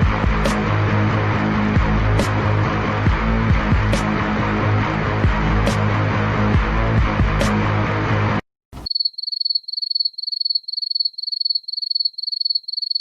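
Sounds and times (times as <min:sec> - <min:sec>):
burst of music: 0:00.0 - 0:08.4
crickets chirping: 0:08.8 - 0:13.0.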